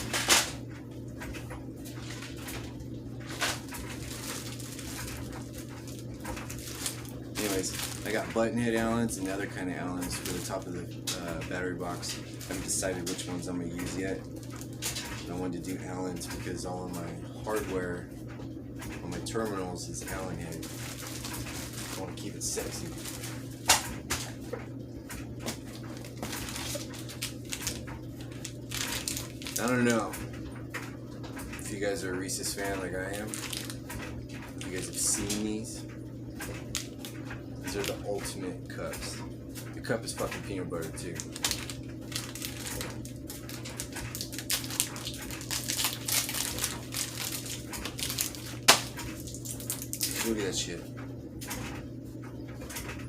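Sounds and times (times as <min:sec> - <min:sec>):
steady low hum: 0:00.0 - 0:53.0
candy wrapper crinkling: 0:03.3 - 0:08.5, 0:20.5 - 0:23.5, 0:25.6 - 0:29.9, 0:33.1 - 0:33.8, 0:41.1 - 0:50.3.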